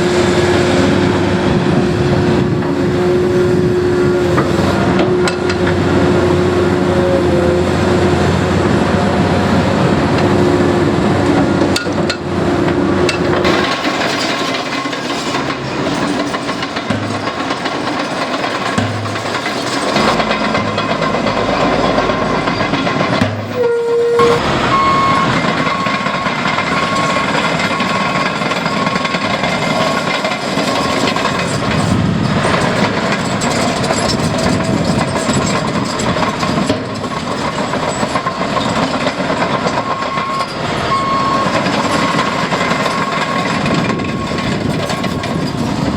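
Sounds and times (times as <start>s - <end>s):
heavy diesel machinery engines: 0.0s - 45.9s
reversing alarm beeping: 23.4s - 30.2s, 39.7s - 44.9s.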